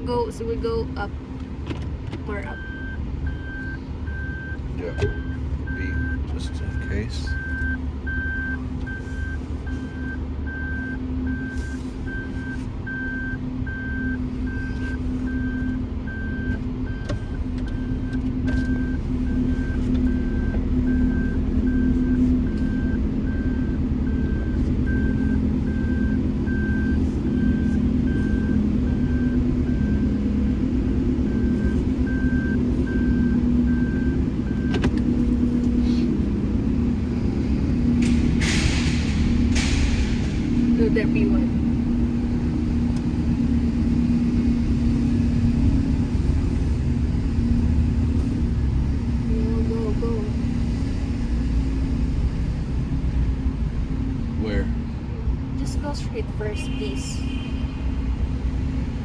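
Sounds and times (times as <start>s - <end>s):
car engine and road noise: 0.0s - 59.0s
car warning beeper chiming: 2.3s - 30.1s.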